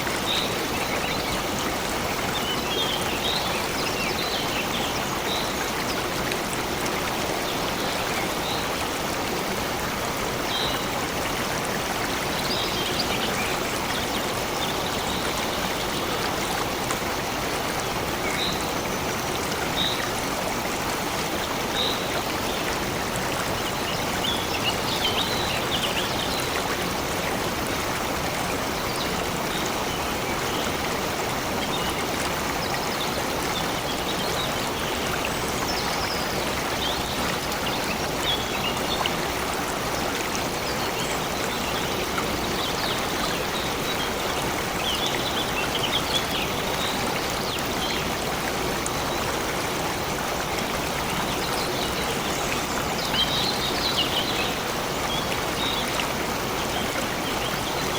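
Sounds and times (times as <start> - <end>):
stream of water flowing: 0.0 - 57.9.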